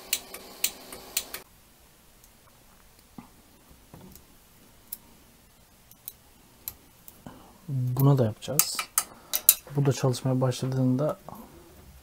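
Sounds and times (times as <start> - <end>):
cooling fans humming: 0.0 - 1.4.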